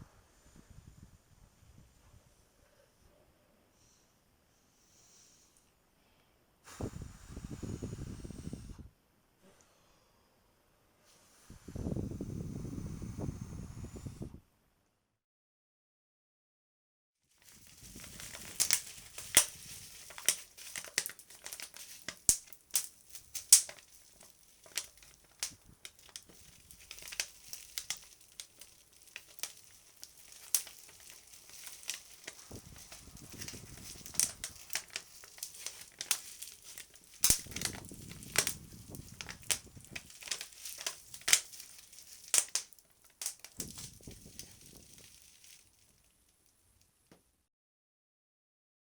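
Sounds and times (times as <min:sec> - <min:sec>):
breath blown at microphone: 0:06.7 - 0:09.9, 0:11.1 - 0:14.4
crinkly sheet crumpling: 0:17.3 - 0:46.5.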